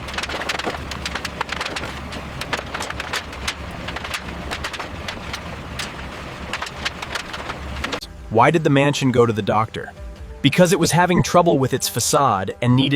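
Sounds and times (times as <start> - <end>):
wood knocking and cracking: 0.0 - 8.0
steady low rumble: 0.0 - 8.4.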